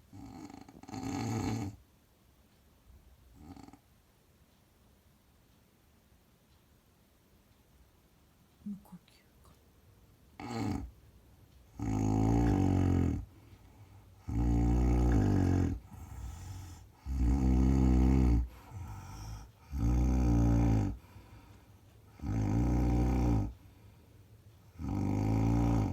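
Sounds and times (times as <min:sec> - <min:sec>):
man snoring loudly: 0:00.1 - 0:01.8, 0:10.4 - 0:10.9, 0:11.8 - 0:13.2, 0:14.2 - 0:21.0, 0:22.2 - 0:23.5, 0:24.7 - 0:25.9
faint breathing: 0:12.4 - 0:25.0.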